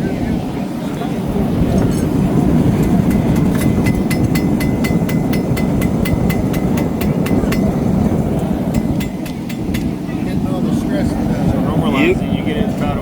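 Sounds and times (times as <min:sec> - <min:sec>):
gas burner roaring: 0:00.0 - 0:13.0
hammer blows on anvil: 0:02.7 - 0:08.1, 0:08.7 - 0:10.2.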